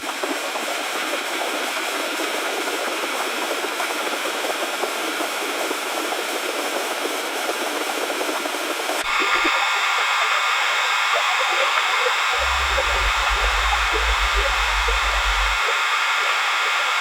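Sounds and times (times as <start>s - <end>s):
constant hiss: 9.1s - 17.0s.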